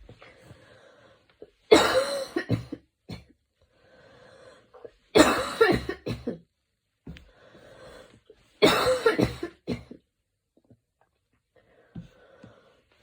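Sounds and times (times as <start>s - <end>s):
woman breathing: 0.2s - 1.4s, 3.7s - 4.9s, 7.1s - 8.4s, 11.6s - 13.0s
woman coughing: 1.7s - 3.3s, 5.2s - 6.4s, 8.6s - 10.0s.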